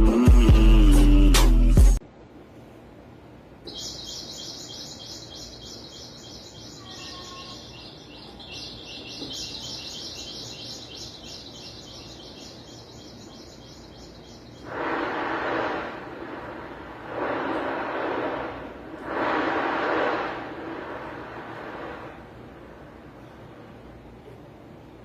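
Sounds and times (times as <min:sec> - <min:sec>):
fainter lower chirps: 0:03.6 - 0:14.8
rhythmic high-pitched chirping: 0:03.7 - 0:14.7.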